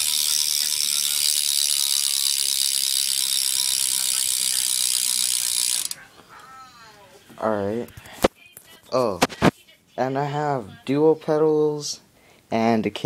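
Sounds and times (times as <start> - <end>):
bike hub ratcheting buzz: 0.0 - 6.0.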